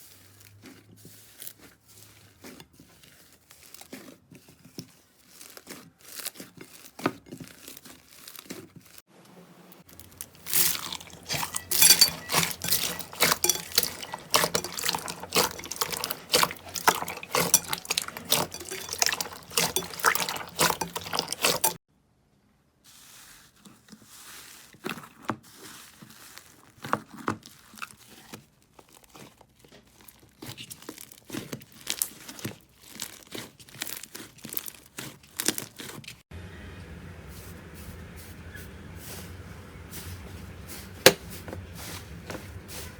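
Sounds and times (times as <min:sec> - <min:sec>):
slime crackling and popping: 0:27.4 - 0:36.2.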